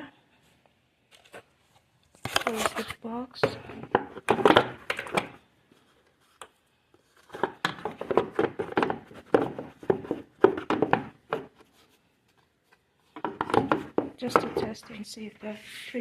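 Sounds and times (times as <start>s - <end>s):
plastic cover rubbing and scraping: 2.2s - 5.4s.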